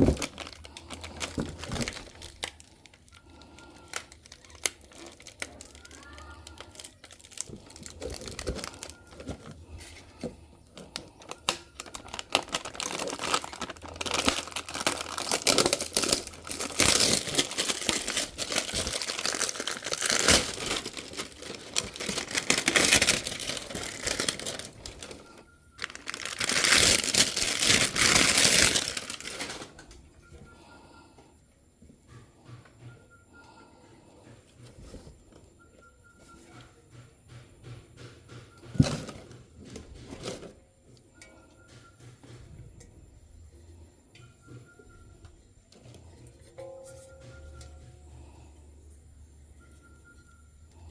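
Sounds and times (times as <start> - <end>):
packaging wrap crinkling and tearing: 0.0 - 9.6, 10.8 - 29.8.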